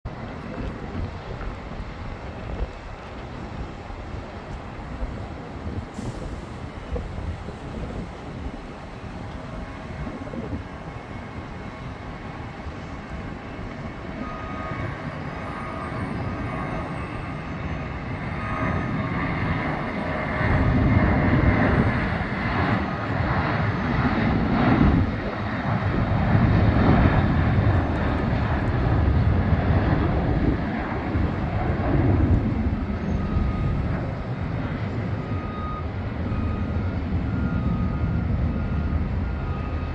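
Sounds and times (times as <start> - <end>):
jet engines at takeoff thrust: 0.0 - 39.9.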